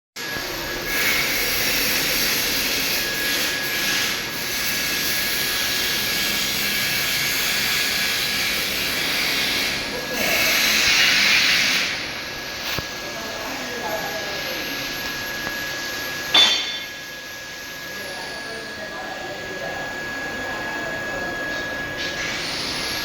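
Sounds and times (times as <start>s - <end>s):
welding arc hissing: 0.4s - 15.5s
thin high tone: 13.1s - 22.2s.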